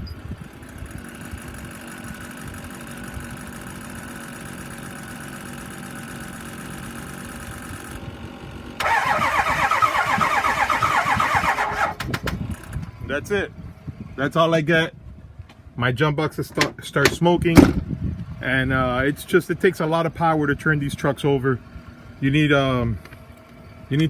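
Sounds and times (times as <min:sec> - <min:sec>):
starter cranking diesel engine: 0:00.0 - 0:13.0.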